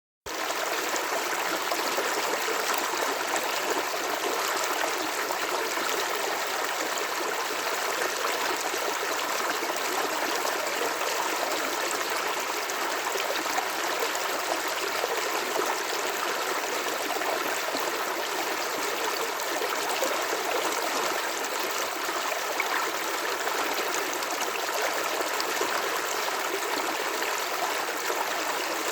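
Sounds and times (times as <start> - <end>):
running water flowing: 8.4 - 28.9.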